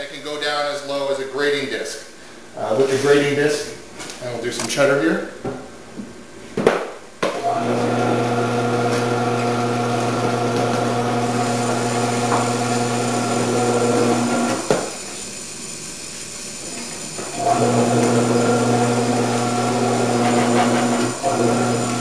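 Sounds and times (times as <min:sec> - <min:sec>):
food processor motor humming: 0:07.4 - 0:22.0.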